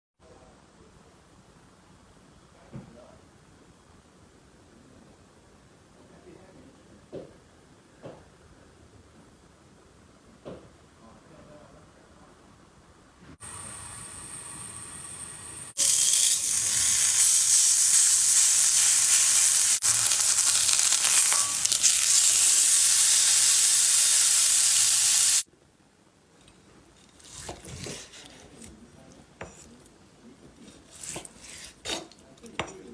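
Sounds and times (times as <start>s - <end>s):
steak sizzling in a pan: 13.4s - 25.4s.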